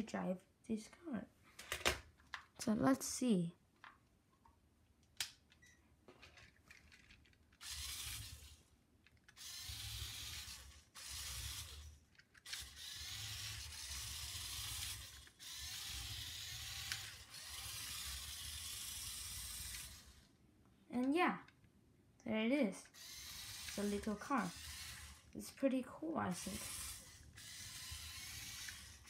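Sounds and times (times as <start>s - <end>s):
toy car motors whirring: 6.4s - 20.4s, 22.8s - 29.0s.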